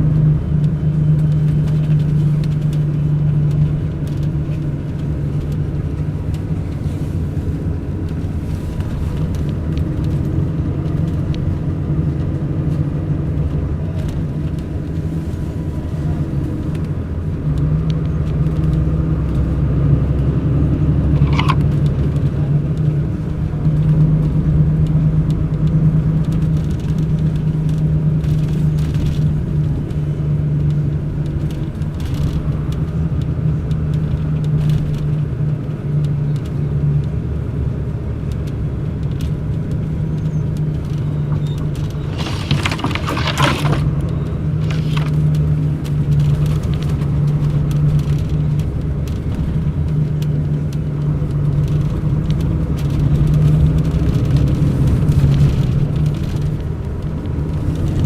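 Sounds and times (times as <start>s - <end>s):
bus diesel engine droning: 0.0s - 25.1s.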